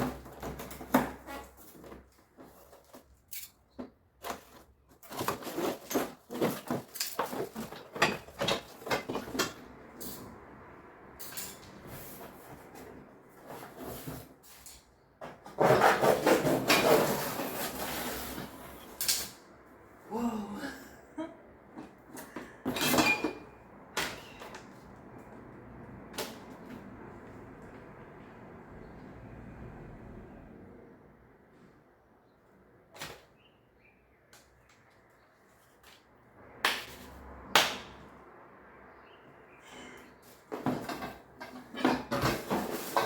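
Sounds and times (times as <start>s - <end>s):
knocks and clinks of hard parts: 0.0s - 10.4s, 11.1s - 11.8s, 21.8s - 24.7s, 40.4s - 43.0s.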